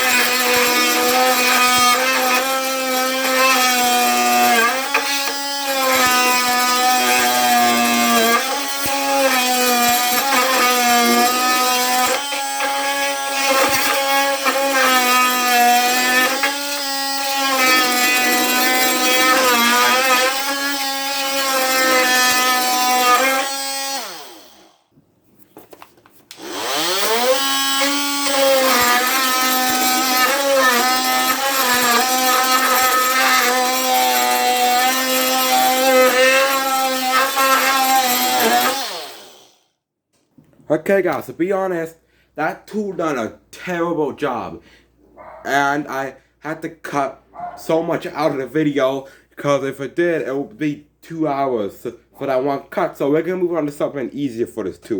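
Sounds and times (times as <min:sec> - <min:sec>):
oscillating tool cutting wood: 0:00.0 - 0:24.7, 0:26.4 - 0:39.6.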